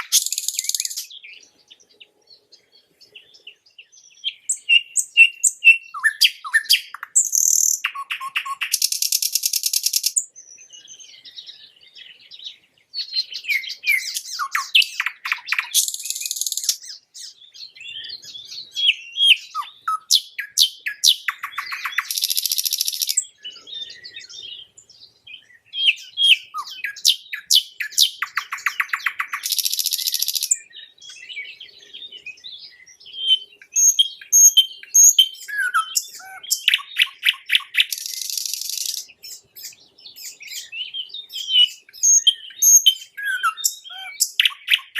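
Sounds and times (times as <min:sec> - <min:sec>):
nightingale singing: 0:00.0 - 0:44.9.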